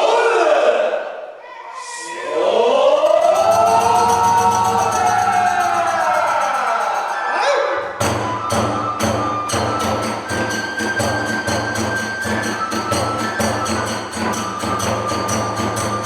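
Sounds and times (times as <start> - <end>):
person chanting: 0.0 - 7.8
flute held high notes: 1.7 - 16.0
taiko drums beating: 3.0 - 7.2, 7.8 - 16.0
hand cymbals: 3.0 - 16.0.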